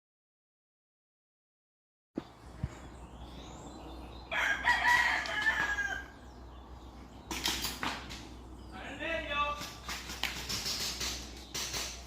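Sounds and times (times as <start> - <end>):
rooster crowing: 4.3 - 6.3.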